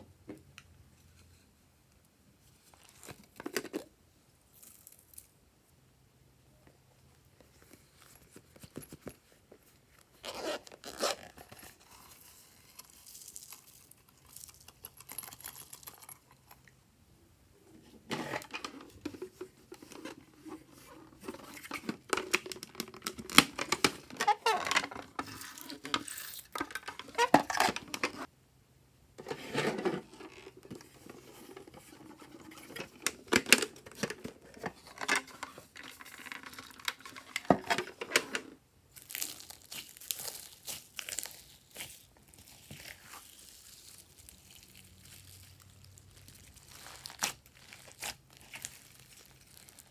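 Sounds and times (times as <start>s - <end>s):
slime squishing with crackles: 38.9s - 49.9s.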